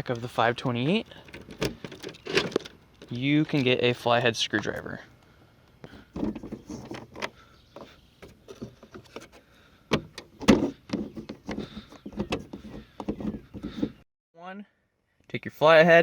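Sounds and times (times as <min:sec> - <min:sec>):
tools clinking and knocking: 0:01.1 - 0:03.7.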